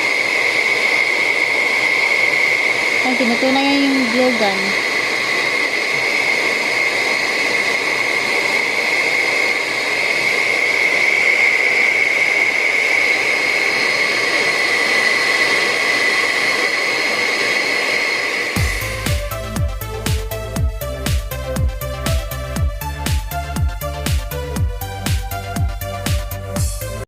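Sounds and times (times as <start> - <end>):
hot-air welder gun blowing: 0.0 - 27.0.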